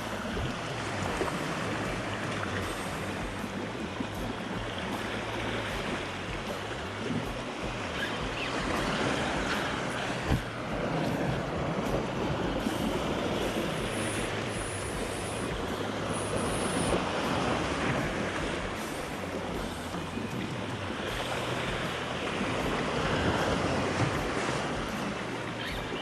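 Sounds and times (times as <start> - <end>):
sea surf: 0.0 - 26.0
wind on microphone: 0.0 - 26.0.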